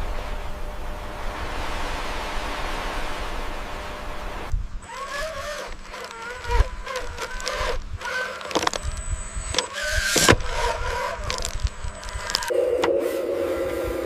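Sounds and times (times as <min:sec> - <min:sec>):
small electric motors whining: 0:03.8 - 0:14.0
sharp clicks and knocks: 0:05.0 - 0:12.5.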